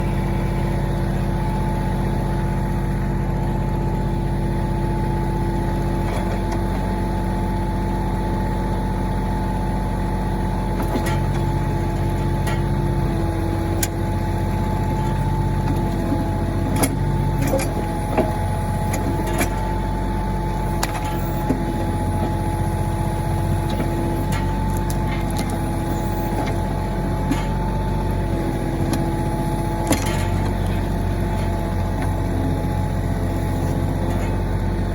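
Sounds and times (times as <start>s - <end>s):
tractor diesel engine running: 0.0s - 34.9s
backhoe knocks and clicks: 10.8s - 19.9s, 23.5s - 32.3s.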